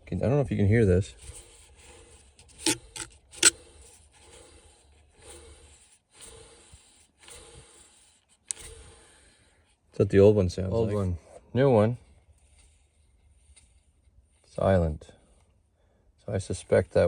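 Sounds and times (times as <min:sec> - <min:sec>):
blower fan scraping and grinding: 0:00.5 - 0:09.3
sharp clicks: 0:02.6 - 0:03.6.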